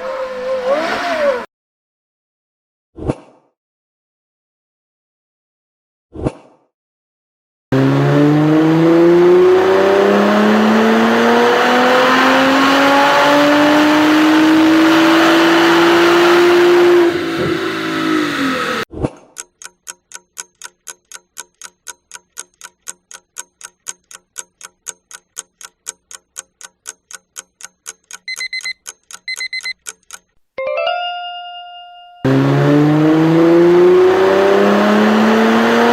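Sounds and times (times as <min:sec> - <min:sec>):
car engine accelerating: 0:07.8 - 0:18.9, 0:32.3 - 0:35.9
countdown timer ticking: 0:19.4 - 0:30.4
short beeps: 0:28.2 - 0:29.8.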